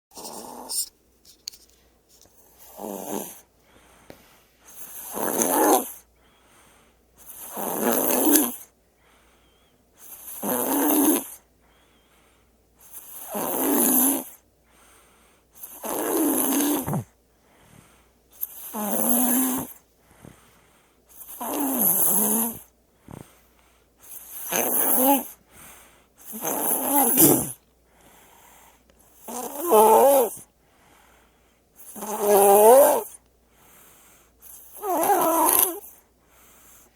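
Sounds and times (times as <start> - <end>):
baby snoring: 0.1 - 0.8, 2.4 - 3.5, 4.7 - 6.1, 7.2 - 8.7, 10.0 - 11.4, 12.8 - 14.4, 15.6 - 17.2, 17.9 - 20.4, 21.1 - 23.4, 24.0 - 27.6, 28.2 - 30.5, 31.8 - 33.2, 34.4 - 36.9
quiet breaths: 0.1 - 36.9.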